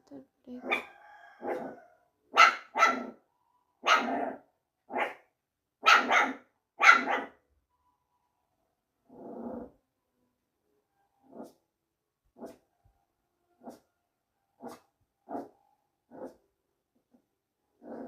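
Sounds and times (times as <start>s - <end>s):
small dog barking: 0.6s - 3.2s, 3.8s - 7.4s, 14.6s - 16.4s.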